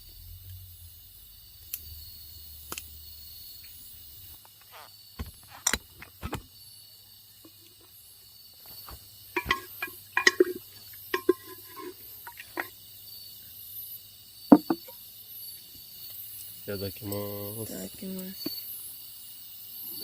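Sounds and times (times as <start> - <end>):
crickets chirring: 0.0 - 20.0
dishes and utensils clinking: 9.4 - 12.7.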